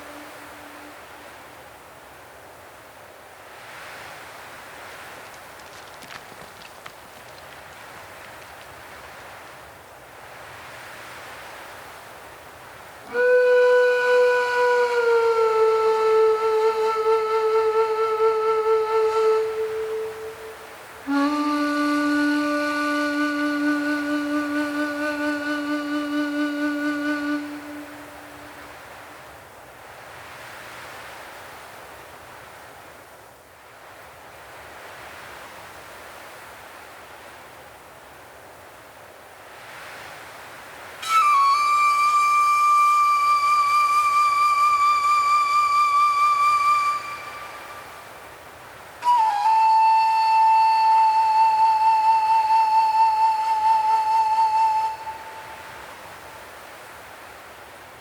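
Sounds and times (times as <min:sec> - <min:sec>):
woodwind long low note: 0:00.0 - 0:01.8, 0:13.0 - 0:29.2, 0:41.0 - 0:56.8
faint wind-like hiss: 0:00.0 - 0:58.0.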